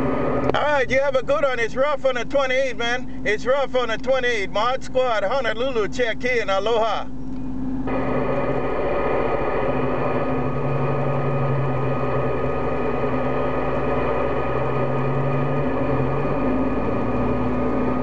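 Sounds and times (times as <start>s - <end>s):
radio static and hiss: 7.9s - 18.0s
steady whistling tones: 7.9s - 18.0s.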